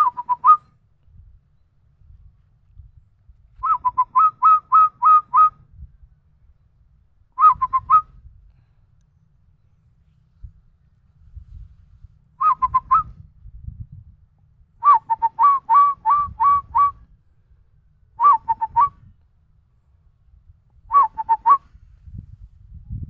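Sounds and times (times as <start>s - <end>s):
person whistling bird call: 0.0s - 0.6s, 3.6s - 5.5s, 7.4s - 8.1s, 12.4s - 13.2s, 14.8s - 17.0s, 18.2s - 18.9s, 20.9s - 21.6s.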